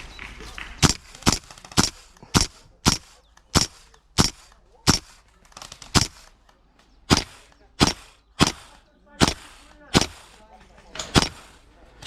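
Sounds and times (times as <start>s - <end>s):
airsoft rifle shots: 0.7s - 11.7s.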